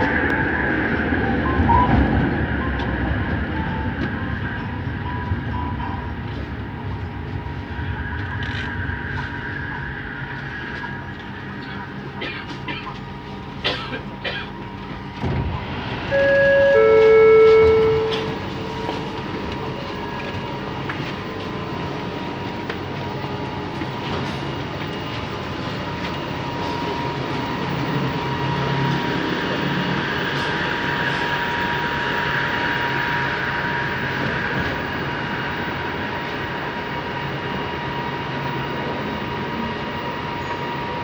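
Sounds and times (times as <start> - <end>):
train running with whine: 0.0 - 41.0
two-note door chime: 16.1 - 19.0.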